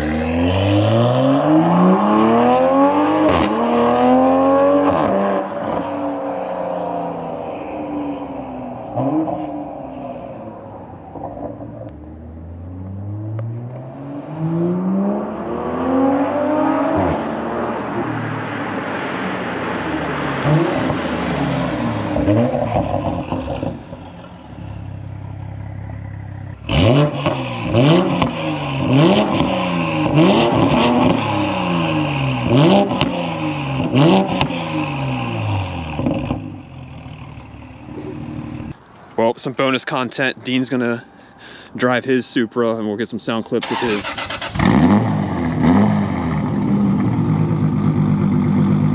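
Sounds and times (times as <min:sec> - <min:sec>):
car engine accelerating hard: 0:00.0 - 0:38.8, 0:43.6 - 0:48.9
engine revving with exhaust cracks: 0:25.4 - 0:36.7, 0:43.6 - 0:48.9.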